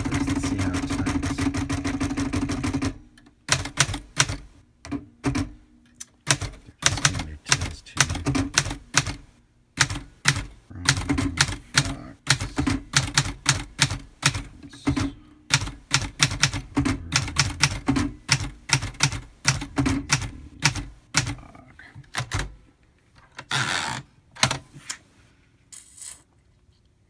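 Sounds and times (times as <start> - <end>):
typewriter rasp: 0.0 - 4.5, 6.3 - 9.2, 9.8 - 21.4
manual typewriter typing: 0.0 - 5.6, 6.2 - 21.5, 22.1 - 22.6.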